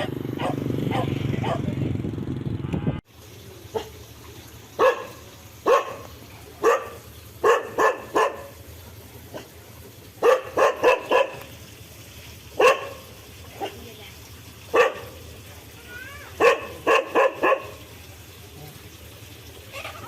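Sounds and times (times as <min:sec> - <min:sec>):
dog barking: 0:00.0 - 0:01.7, 0:03.7 - 0:04.0, 0:04.8 - 0:08.6, 0:10.2 - 0:11.5, 0:12.6 - 0:13.8, 0:14.7 - 0:15.2, 0:16.4 - 0:17.8.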